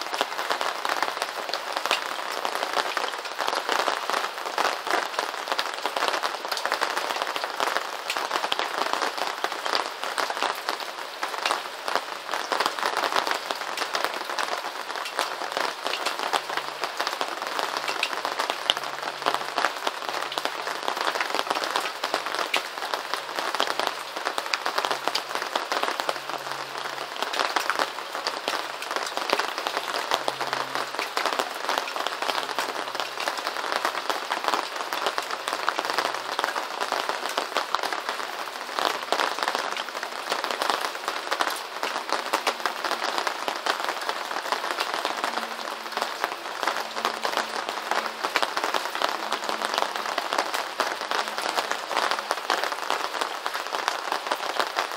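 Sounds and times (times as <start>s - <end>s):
rain pattering: 0.0s - 54.9s.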